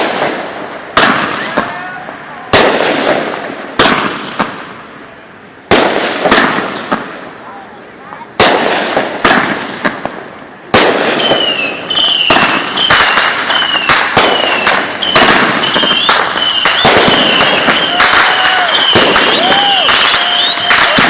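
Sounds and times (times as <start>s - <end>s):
fireworks bangs and crackling: 0.0s - 21.0s
firework whistles: 11.0s - 21.0s.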